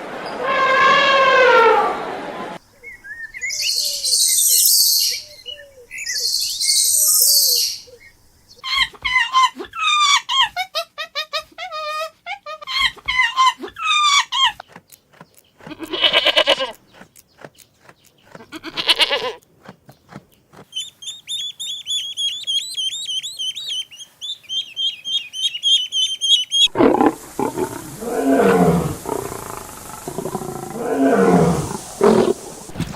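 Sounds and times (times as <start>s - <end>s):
small bird chirping: 2.6s - 8.9s, 14.1s - 26.8s
loud deep roar: 26.7s - 32.7s
pulsing bleats: 26.8s - 32.5s.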